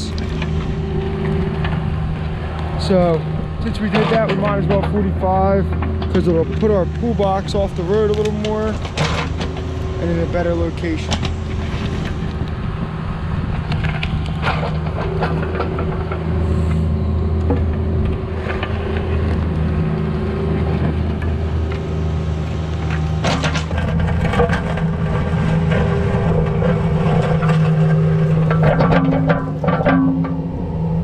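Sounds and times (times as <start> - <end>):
excavator diesel engine running: 0.0 - 31.0
digging knocks and scrapes: 2.8 - 12.2, 22.8 - 30.6.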